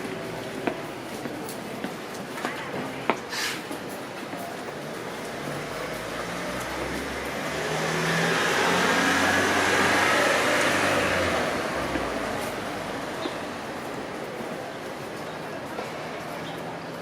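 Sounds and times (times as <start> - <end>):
car passing by: 5.2 - 14.1.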